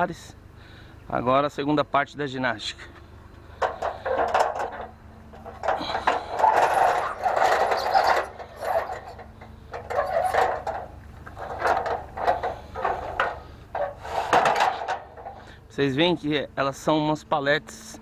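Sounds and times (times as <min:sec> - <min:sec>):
trailer boards scraping and knocking: 0:03.6 - 0:15.6.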